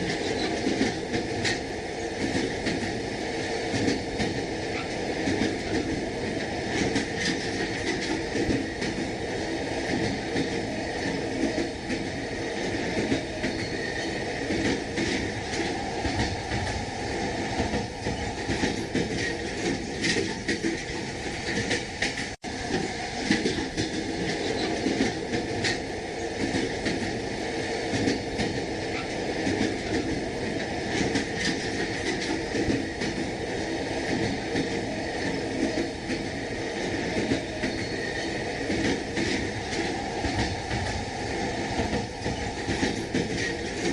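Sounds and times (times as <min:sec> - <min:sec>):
train rumbling: 0:00.0 - 0:43.9
wheels clacking over rail joints: 0:17.6 - 0:27.2, 0:27.9 - 0:33.3, 0:41.8 - 0:43.9.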